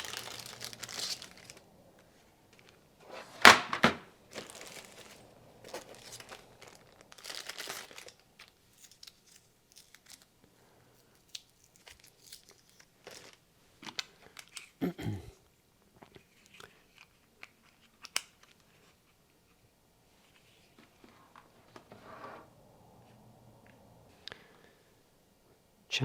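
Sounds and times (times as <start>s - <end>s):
handling rustling: 0.0s - 1.6s, 2.6s - 10.3s.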